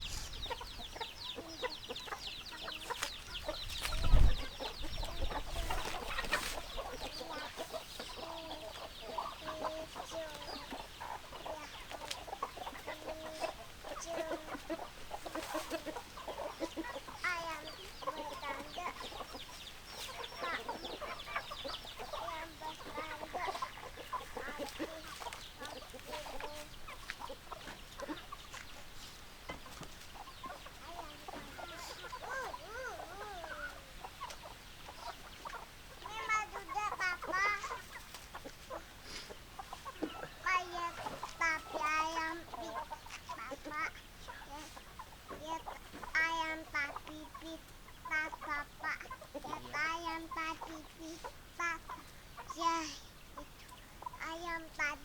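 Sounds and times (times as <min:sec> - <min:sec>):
high chirping: 0:00.0 - 0:14.2
hens clucking: 0:00.0 - 0:55.0.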